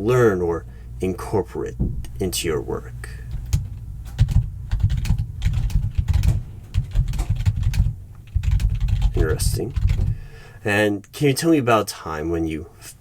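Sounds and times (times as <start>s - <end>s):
typing on a keyboard: 4.2s - 10.1s.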